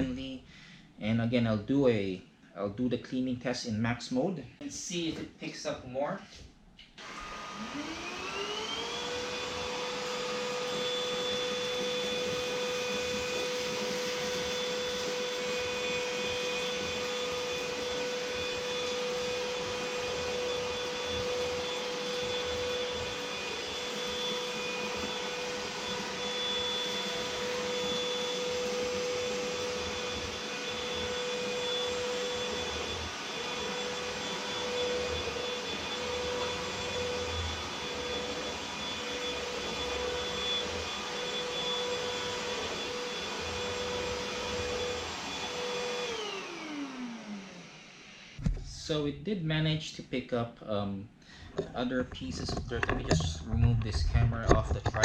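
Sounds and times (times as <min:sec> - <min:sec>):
vacuum cleaner motor whining: 0:07.0 - 0:49.0.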